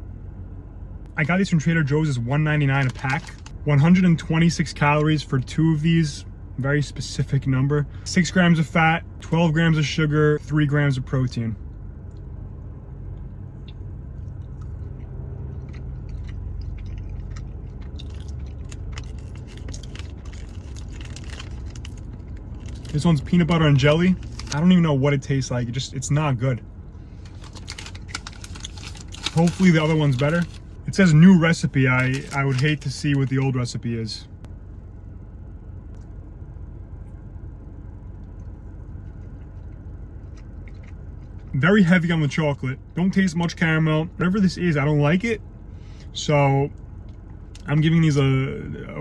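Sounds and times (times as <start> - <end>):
steady low rumble: 0.0 - 49.0
plastic wrapper crinkling: 2.8 - 3.5, 18.0 - 24.6, 27.2 - 30.8, 31.8 - 33.4.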